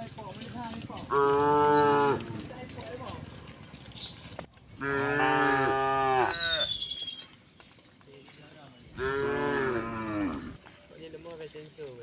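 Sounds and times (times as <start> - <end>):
cows mooing: 0.0 - 6.8, 8.9 - 10.6
birds chirping faintly: 0.0 - 12.0.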